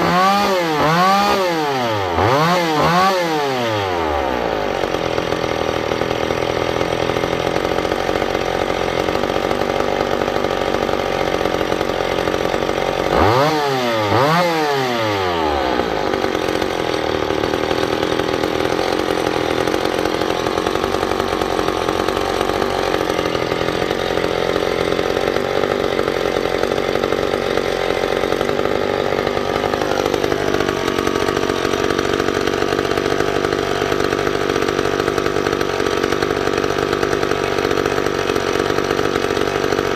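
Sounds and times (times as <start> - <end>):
chainsaw engine revving: 0.0 - 39.9.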